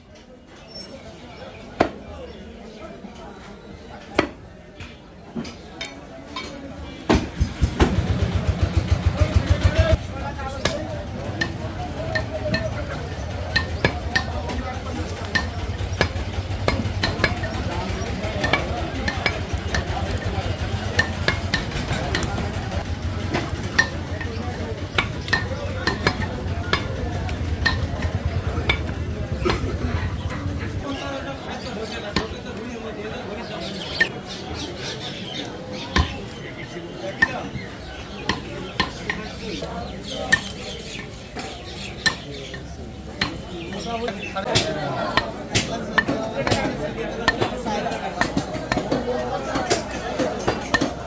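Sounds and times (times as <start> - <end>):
steady low hum: 15.0 - 30.9.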